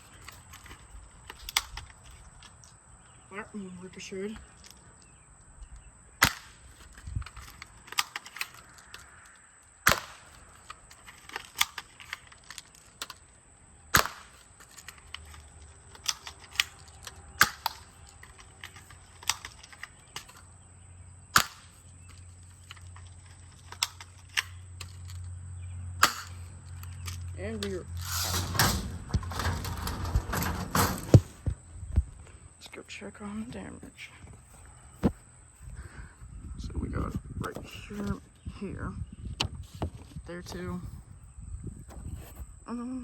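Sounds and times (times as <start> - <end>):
airsoft gun shots: 6.2 - 6.6, 9.8 - 10.4, 13.9 - 14.4.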